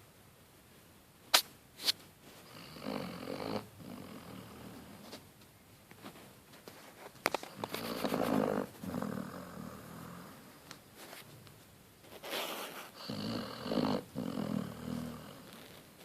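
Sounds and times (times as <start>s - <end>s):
dog snoring: 2.5s - 5.0s, 7.5s - 10.6s, 12.9s - 15.8s.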